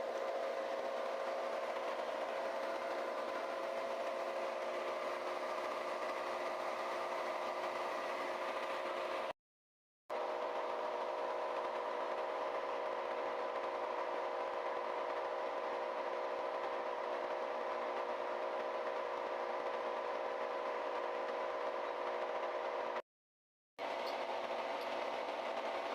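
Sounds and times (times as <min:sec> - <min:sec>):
metal lathe humming: 0:00.0 - 0:09.3.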